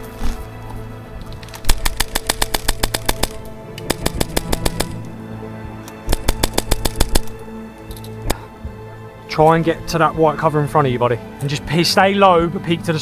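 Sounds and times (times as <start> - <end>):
background music: 0.0 - 13.0
airsoft guns firing: 1.7 - 5.0, 6.0 - 7.4.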